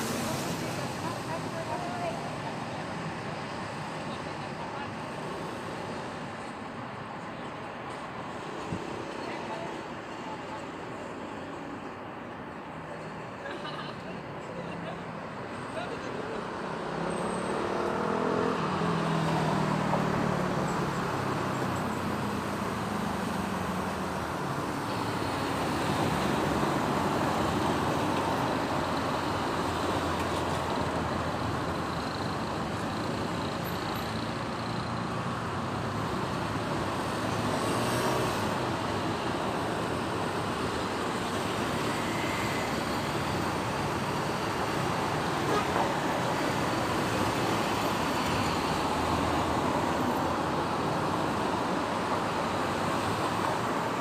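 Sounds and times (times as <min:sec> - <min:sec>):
city road traffic: 0:00.0 - 0:54.0.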